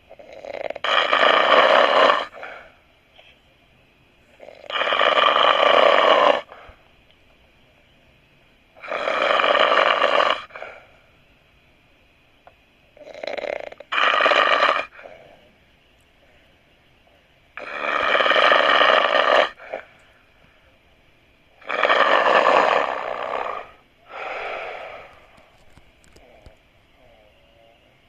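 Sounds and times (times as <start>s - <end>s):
person snoring loudly: 0.1s - 2.5s, 4.4s - 6.6s, 8.8s - 10.6s, 13.0s - 15.5s, 17.6s - 19.8s, 21.6s - 25.2s.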